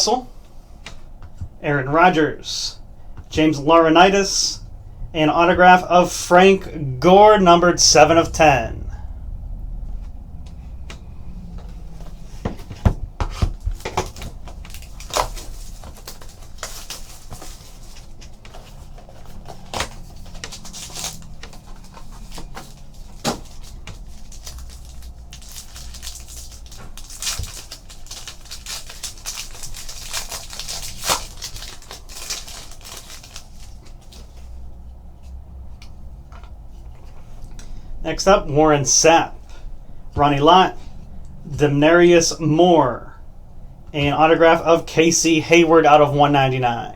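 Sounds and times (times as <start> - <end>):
wrappers tearing and crinkling: 13.6 - 34.6.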